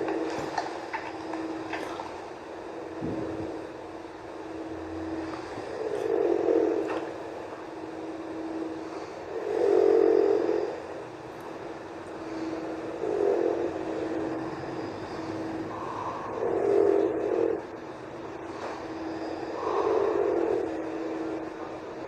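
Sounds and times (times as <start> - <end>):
steady low hum: 0.0 - 22.0
person snoring: 4.9 - 7.2, 8.6 - 11.0, 12.1 - 17.6, 18.6 - 22.0.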